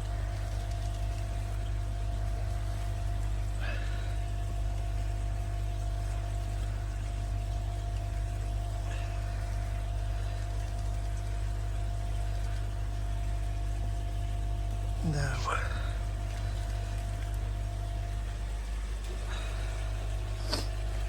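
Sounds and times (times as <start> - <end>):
pond pump humming: 0.0 - 21.0
faint whine: 8.8 - 21.0.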